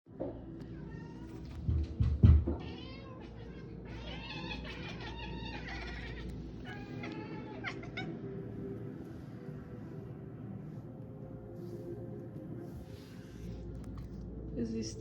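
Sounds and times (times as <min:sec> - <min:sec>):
cat meowing: 0:02.6 - 0:08.1.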